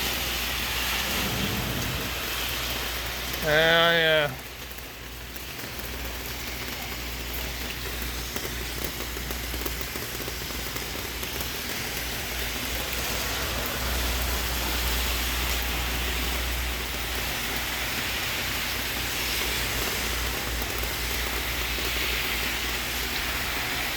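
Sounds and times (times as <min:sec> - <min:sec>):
steady rain falling: 0:00.0 - 0:23.9
low rumble: 0:01.0 - 0:02.4.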